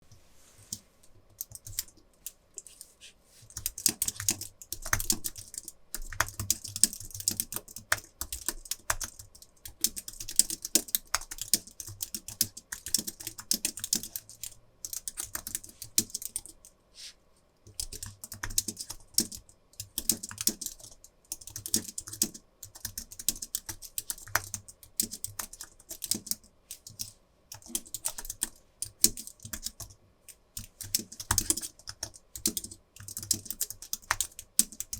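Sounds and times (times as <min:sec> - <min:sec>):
fast keyboard typing: 0:01.3 - 0:02.0, 0:03.5 - 0:16.7, 0:17.7 - 0:34.9.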